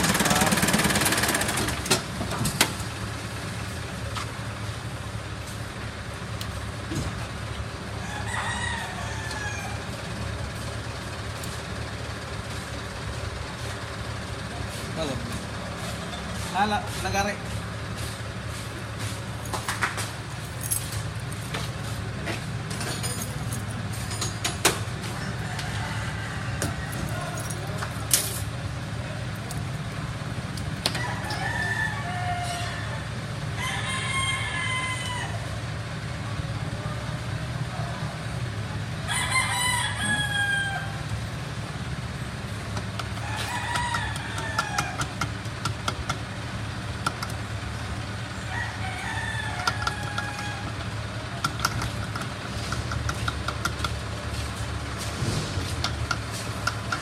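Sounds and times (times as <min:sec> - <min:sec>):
vehicle engine idling: 0:00.0 - 0:57.0
rooster crowing: 0:08.0 - 0:10.0, 0:25.2 - 0:27.4, 0:30.9 - 0:35.6, 0:39.0 - 0:41.1, 0:43.2 - 0:45.2, 0:48.4 - 0:51.0.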